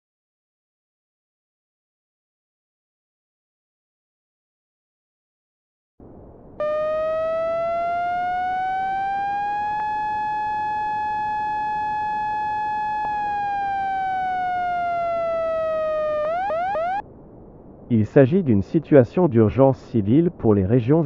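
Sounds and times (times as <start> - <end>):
electronic siren tone: 6.6 - 17.0.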